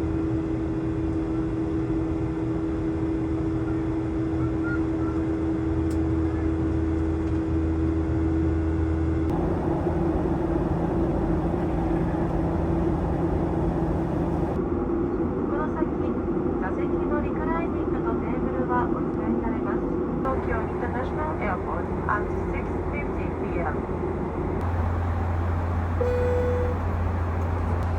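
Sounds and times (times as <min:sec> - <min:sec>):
jet engine drone: 0:09.3 - 0:14.6, 0:24.6 - 0:27.9
low hum: 0:09.3 - 0:14.6, 0:24.6 - 0:27.9.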